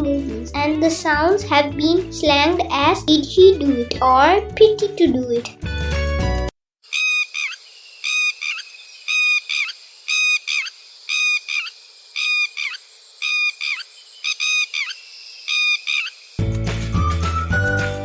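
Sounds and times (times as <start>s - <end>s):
lapwing alarm call: 6.9s - 16.4s.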